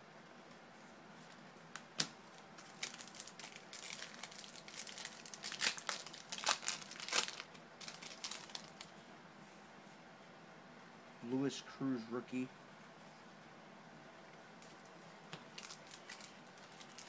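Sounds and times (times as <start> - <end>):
card pack wrapper crinkling and tearing: 2.6 - 8.9, 15.4 - 17.0.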